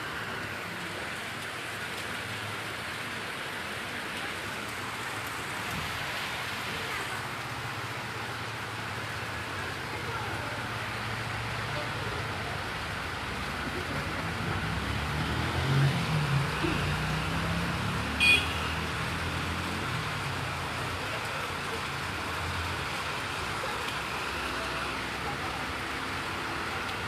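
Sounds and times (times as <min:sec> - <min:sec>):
heavy rain hissing: 0:00.0 - 0:27.0.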